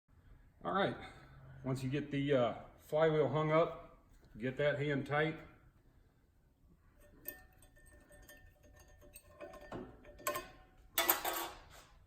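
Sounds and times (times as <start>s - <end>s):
light metal clicks and clinks: 7.0s - 11.4s.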